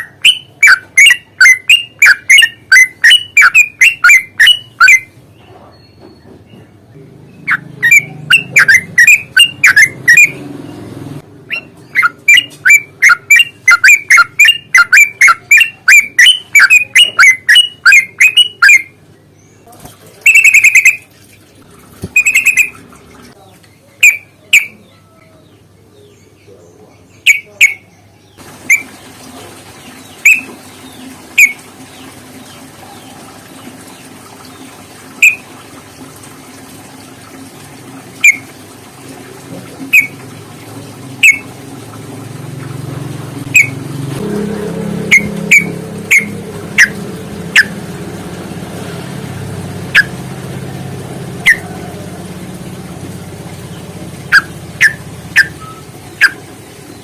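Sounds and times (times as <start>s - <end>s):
bird chirping: 0.0s - 10.8s, 11.5s - 19.7s, 20.3s - 21.0s, 22.1s - 22.8s, 23.4s - 28.9s, 29.8s - 35.4s, 39.9s - 40.2s, 45.0s - 47.8s, 53.7s - 57.0s
harsh bird calls: 0.0s - 10.8s, 11.5s - 19.7s, 20.3s - 21.0s, 22.2s - 35.4s.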